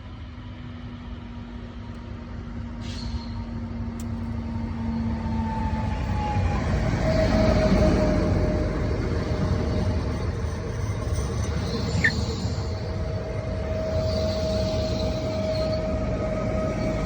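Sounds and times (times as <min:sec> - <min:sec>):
train rumbling: 0:00.0 - 0:17.0
short squeak: 0:11.6 - 0:12.7.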